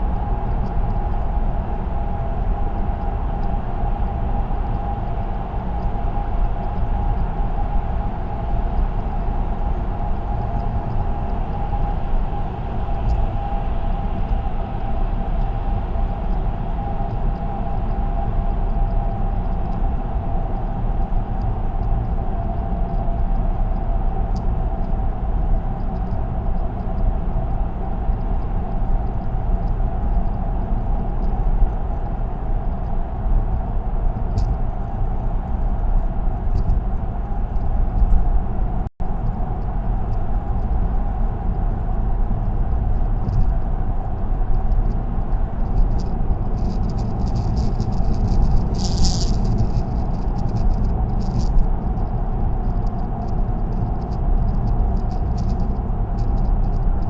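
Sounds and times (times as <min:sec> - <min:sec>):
constant hum: 0:00.0 - 0:57.0
tyre and road noise: 0:44.7 - 0:57.0.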